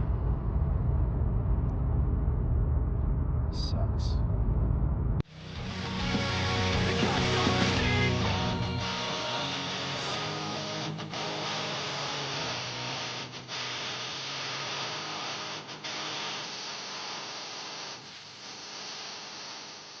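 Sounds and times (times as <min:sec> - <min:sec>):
background guitar music: 0:05.3 - 0:12.9.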